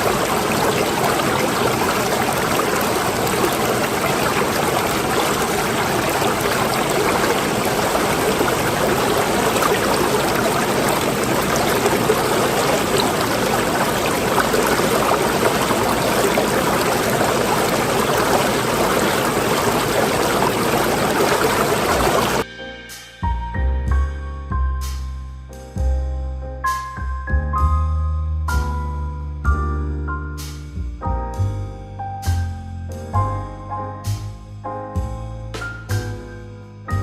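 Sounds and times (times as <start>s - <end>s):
water rushing: 0.0s - 22.4s.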